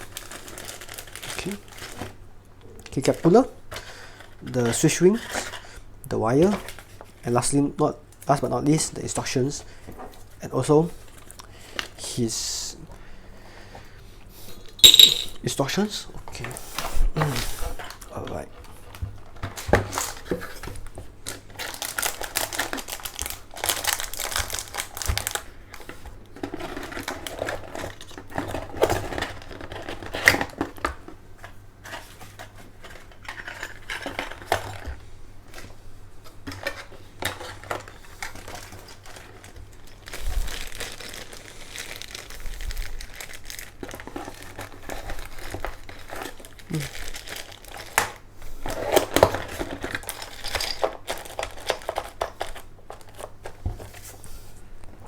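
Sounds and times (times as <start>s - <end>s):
packaging crinkling and rustling: 0.0s - 2.2s, 6.3s - 7.5s, 17.2s - 55.0s.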